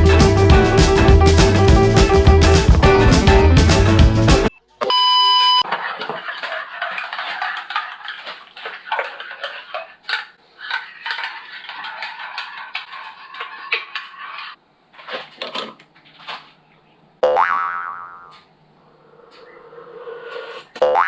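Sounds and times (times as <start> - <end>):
electronic appliance beep: 4.5 - 5.7.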